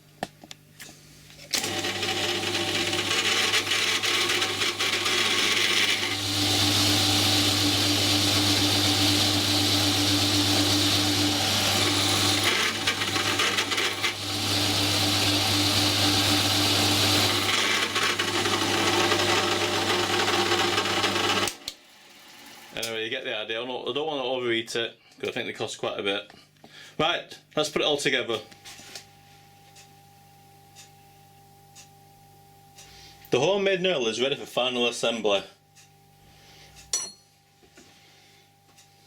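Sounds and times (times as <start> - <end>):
electric drill motor humming: 1.6 - 22.8
cutter grinding into metal: 1.6 - 22.9.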